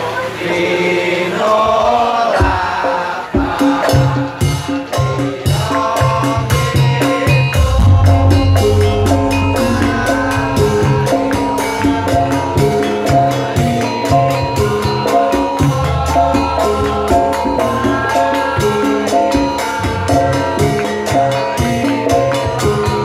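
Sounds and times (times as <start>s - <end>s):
drumming: 2.4s - 23.0s
fast dense percussion strokes: 2.5s - 23.0s
ringing pitched metal notes: 7.3s - 20.6s.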